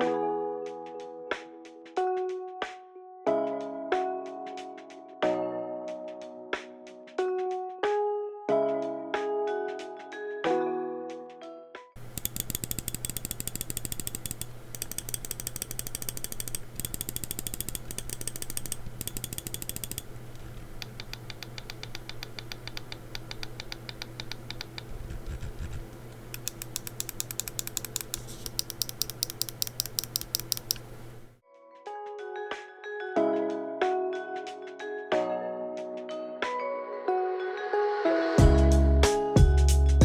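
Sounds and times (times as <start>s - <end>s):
mouse button clicking: 12.0s - 31.3s.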